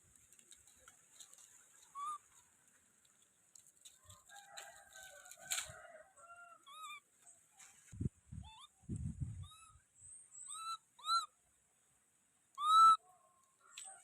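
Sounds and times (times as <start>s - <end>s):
faint animal calls: 1.3s - 2.5s.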